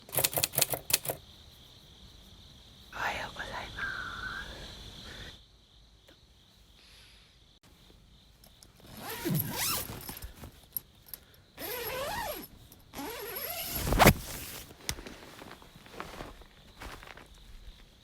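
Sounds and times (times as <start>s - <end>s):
zipper rasping open: 8.9s - 10.5s, 11.6s - 14.7s.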